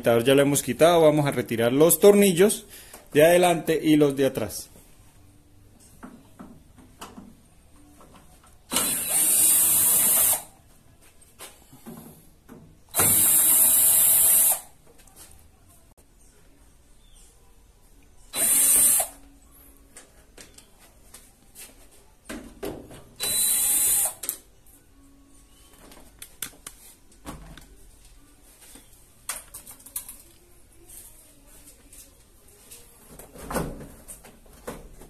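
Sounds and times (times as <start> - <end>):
cordless power drill running: 8.7 - 10.4, 18.4 - 19.1.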